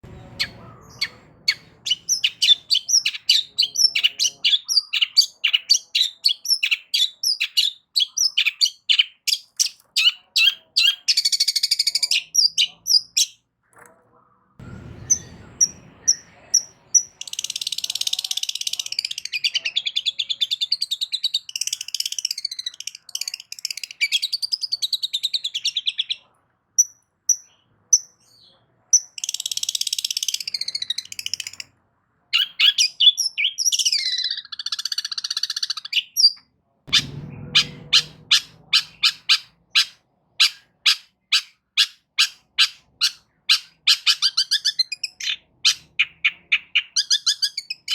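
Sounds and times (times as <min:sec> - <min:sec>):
shrike singing: 0:00.0 - 0:08.8, 0:36.9 - 0:46.7.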